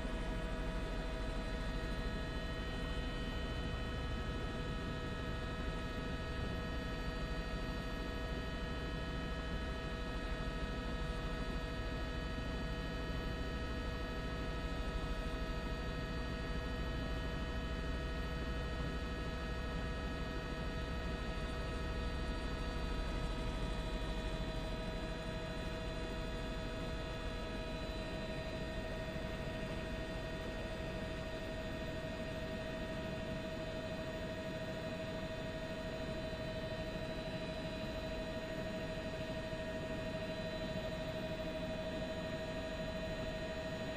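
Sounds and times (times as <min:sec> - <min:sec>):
whining tones hum: 0:16.6 - 0:43.9.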